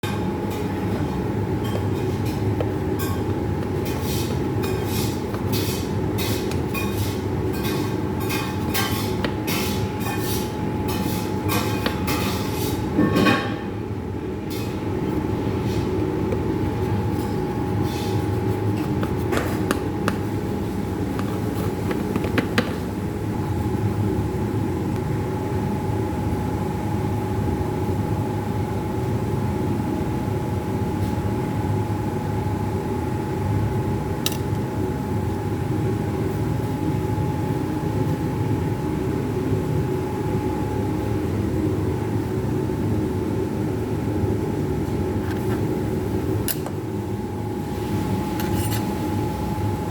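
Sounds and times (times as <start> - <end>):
low mechanical hum: 0.0 - 49.9.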